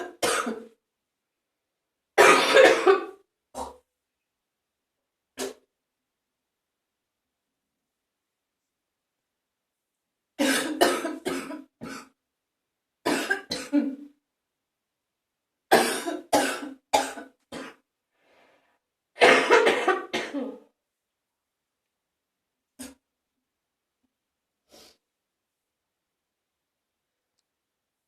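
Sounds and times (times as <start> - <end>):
person coughing wetly: 0.0 - 0.8, 2.2 - 3.8, 10.4 - 12.2, 13.1 - 14.1, 15.7 - 17.8, 19.2 - 20.7.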